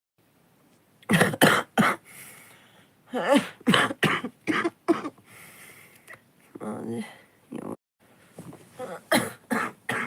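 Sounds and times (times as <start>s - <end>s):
person coughing: 1.1s - 2.0s, 3.1s - 5.2s, 8.8s - 10.0s.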